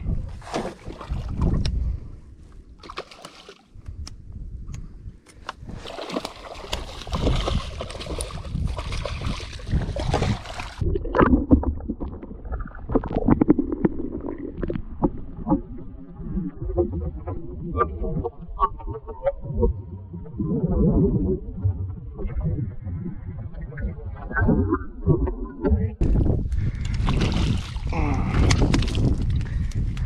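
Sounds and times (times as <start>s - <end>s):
wind rumble on microphone: 0.0s - 2.8s, 3.7s - 6.0s, 6.6s - 30.0s
water splashing around boat: 0.3s - 1.8s, 2.7s - 3.8s, 5.6s - 14.2s, 26.7s - 29.6s.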